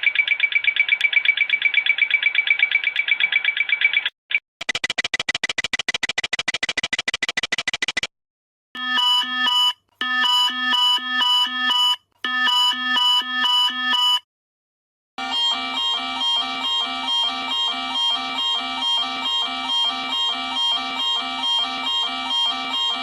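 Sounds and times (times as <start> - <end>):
rapid clacker clicking: 3.8 - 8.1
electronic multi-tone pulses: 15.2 - 23.0
rapid pulsing warning tone: 15.2 - 23.0.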